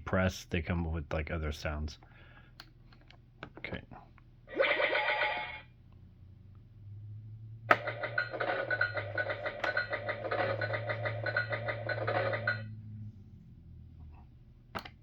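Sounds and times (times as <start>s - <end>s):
low electrical hum: 0.0s - 15.0s
electronic toy sound effect: 4.5s - 5.7s, 7.8s - 12.7s.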